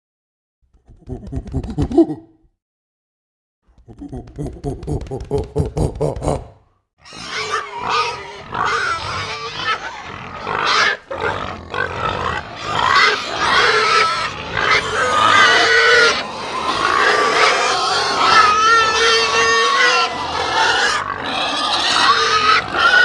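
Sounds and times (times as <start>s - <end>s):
animals calling: 7.0s - 23.0s.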